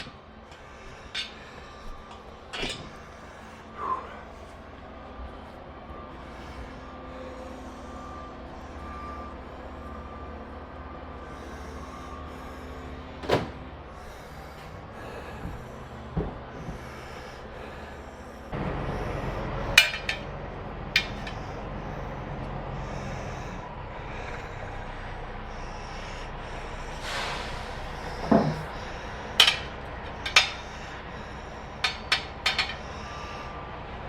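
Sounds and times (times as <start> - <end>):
metal tools clinking and knocking: 0.0 - 2.9, 19.7 - 20.3, 20.9 - 21.5, 29.4 - 30.8, 31.8 - 33.0.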